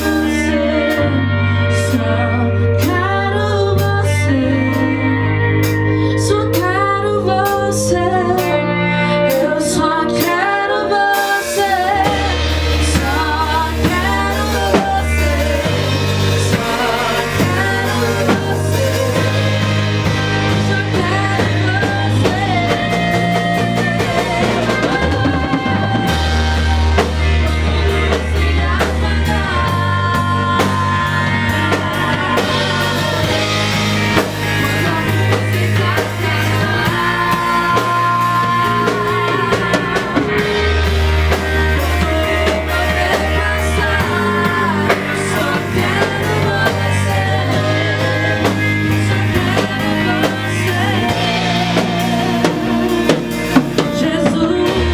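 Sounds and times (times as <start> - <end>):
drum kit: 0.0 - 1.3, 11.1 - 54.9
bass guitar: 0.0 - 54.9
electric guitar: 0.0 - 54.9
person singing with vibrato: 0.0 - 54.9.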